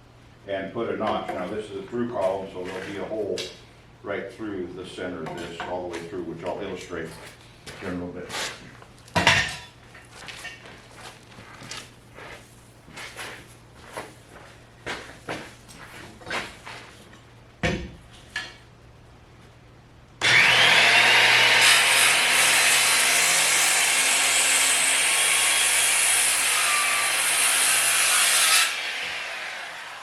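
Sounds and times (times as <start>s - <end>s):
circular saw cutting timber: 20.2s - 30.0s.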